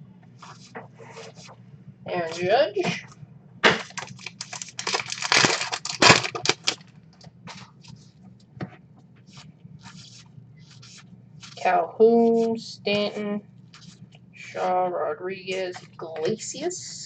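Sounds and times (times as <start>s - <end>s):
cards handled with clicks and rustles: 3.7s - 8.1s
wrapper crinkling and tearing: 3.8s - 6.9s.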